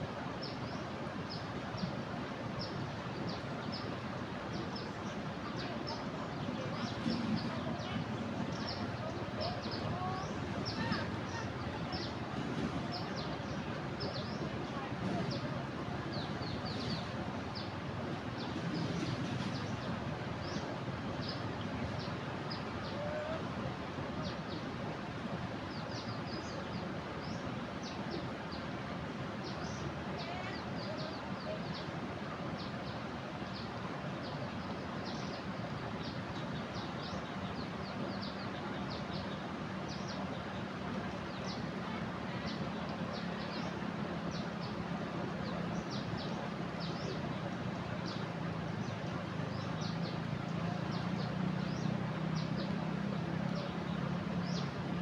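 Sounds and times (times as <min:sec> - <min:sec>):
floodwater rushing: 0:00.0 - 0:55.0.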